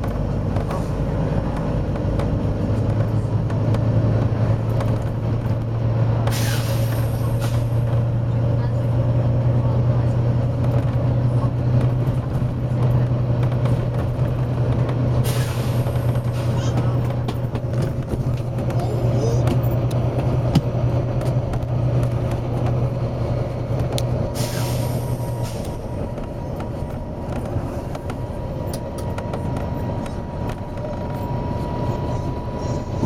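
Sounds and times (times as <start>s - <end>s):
bus diesel engine droning: 0.0s - 33.0s
compressed air hiss: 24.4s - 25.7s.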